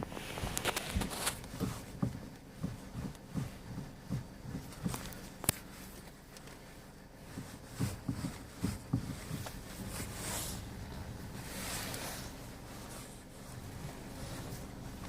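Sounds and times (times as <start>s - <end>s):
car suspension knocks: 1.4s - 5.2s, 7.3s - 11.2s.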